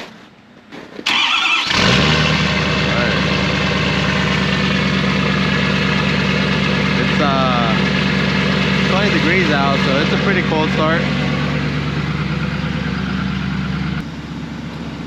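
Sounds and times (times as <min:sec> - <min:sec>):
starter cranking: 0:01.1 - 0:11.8
truck engine idling: 0:01.1 - 0:15.0.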